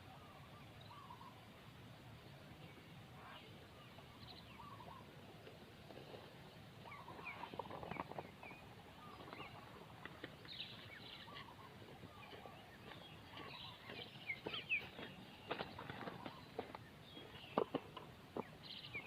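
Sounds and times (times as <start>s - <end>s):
faint bird chirps: 0.0s - 1.5s, 2.2s - 5.2s, 6.4s - 17.8s
low background hiss: 0.0s - 19.0s
small clicks and rustles: 7.2s - 8.5s.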